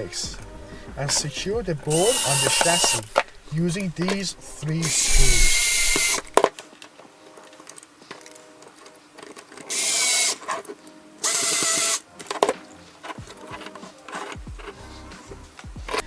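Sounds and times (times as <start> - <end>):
handling clicks: 0.0 - 14.8
electric screwdriver whirring: 1.8 - 6.4, 9.4 - 12.1.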